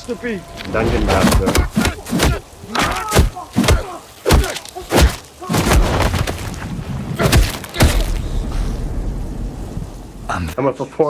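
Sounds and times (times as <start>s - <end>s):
grunts: 1.3s - 5.6s.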